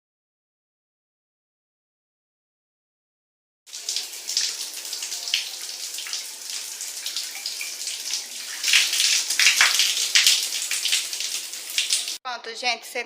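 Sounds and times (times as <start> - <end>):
shower spray splattering: 3.7 - 12.2
water splashing: 3.7 - 12.2.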